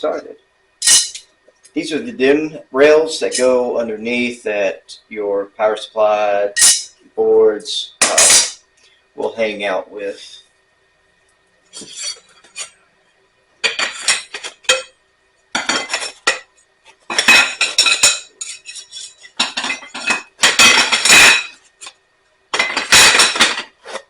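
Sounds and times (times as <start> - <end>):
metal and plastic parts clattering: 18.9 - 21.5, 22.5 - 24.0.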